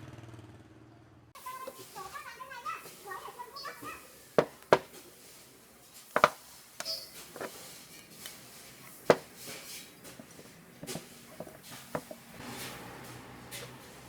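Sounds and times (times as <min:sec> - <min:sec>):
sharp knocks and clicks: 0:04.4 - 0:04.9, 0:06.2 - 0:07.5.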